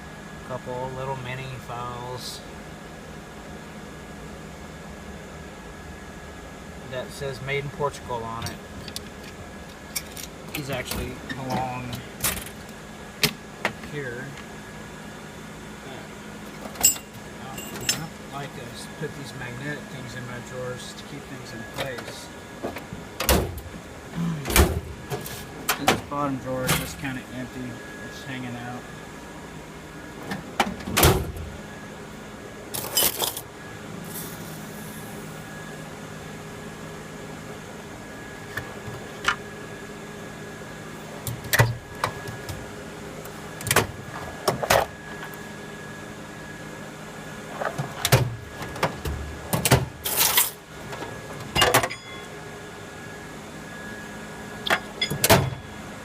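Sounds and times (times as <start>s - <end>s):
steady low hum: 0.0s - 56.0s.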